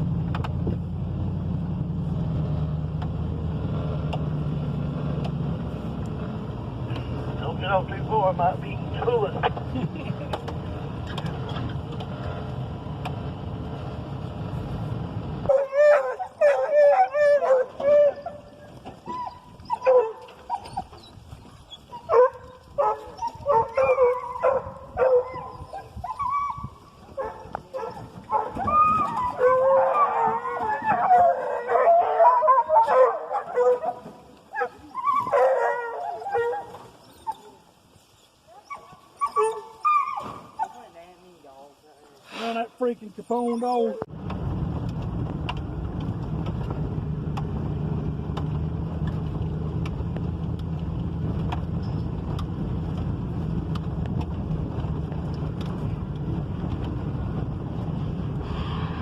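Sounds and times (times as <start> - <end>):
vehicle engine running: 0.0 - 19.1, 44.1 - 59.0
hounds baying and howling: 15.4 - 37.8, 38.5 - 40.9.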